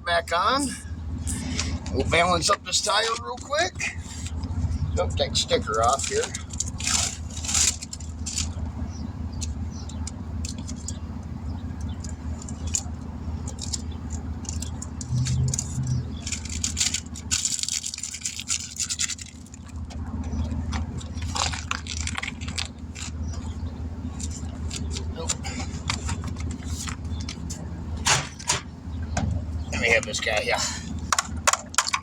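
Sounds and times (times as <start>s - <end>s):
steady low hum: 0.0s - 31.2s
tyre and wheel clicks and scrapes: 11.8s - 27.5s, 31.1s - 32.0s.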